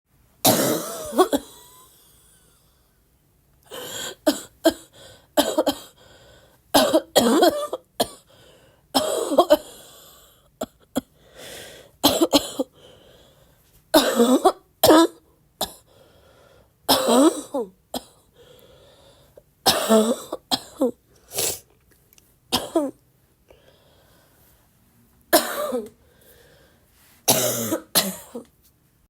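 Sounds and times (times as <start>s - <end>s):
woman coughing harshly: 0.4s - 2.0s, 3.7s - 6.0s, 6.8s - 8.3s, 9.0s - 9.9s, 12.0s - 12.8s, 14.0s - 15.9s, 16.9s - 18.2s, 19.6s - 21.6s, 22.5s - 23.0s, 25.3s - 25.9s, 27.3s - 28.5s.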